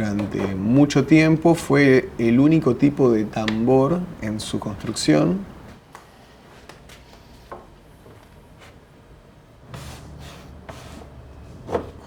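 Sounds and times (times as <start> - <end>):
wood rubbing and shifting: 0.0 - 0.8, 9.7 - 12.0.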